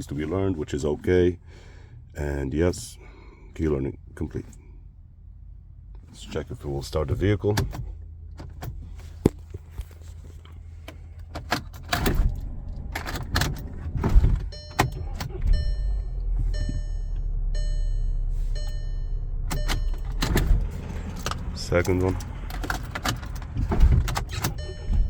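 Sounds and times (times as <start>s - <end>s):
car engine idling: 6.7s - 25.0s
key clicking into ignition: 10.9s - 15.9s, 19.4s - 25.0s.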